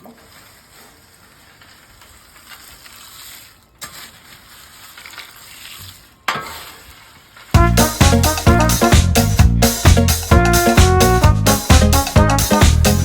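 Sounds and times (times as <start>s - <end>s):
food sizzling on a griddle: 0.1s - 7.6s.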